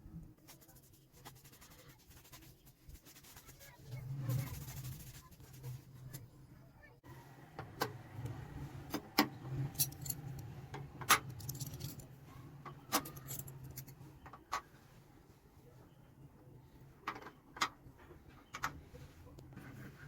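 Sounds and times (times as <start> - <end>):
small metal parts clinking: 9.7 - 10.4, 11.1 - 12.1, 12.9 - 14.0.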